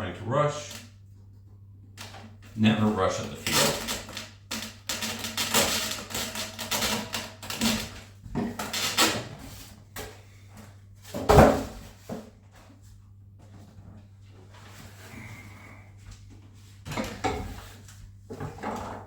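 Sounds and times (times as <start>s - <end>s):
foam parts rubbing and squeaking: 8.6s - 9.8s.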